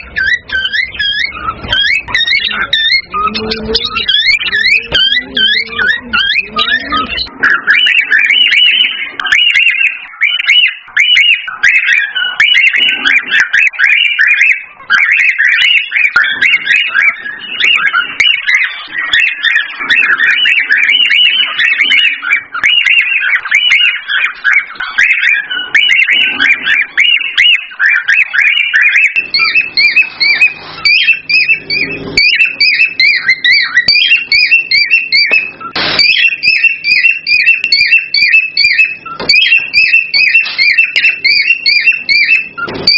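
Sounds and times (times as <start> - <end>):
cockatiels chirping: 0.0 - 42.9
higher quick repeated chirps: 28.9 - 42.9.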